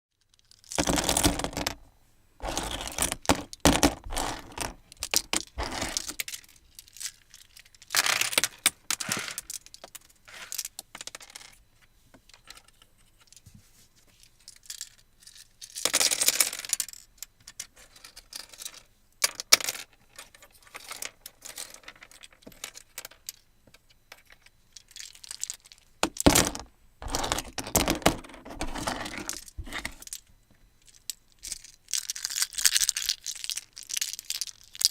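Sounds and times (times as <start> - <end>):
coins clinking: 0.6 - 1.8, 2.4 - 11.5, 24.8 - 30.2.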